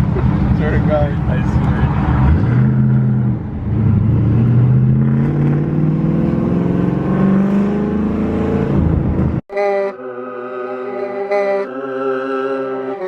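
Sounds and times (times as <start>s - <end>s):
car engine accelerating: 0.0s - 9.4s.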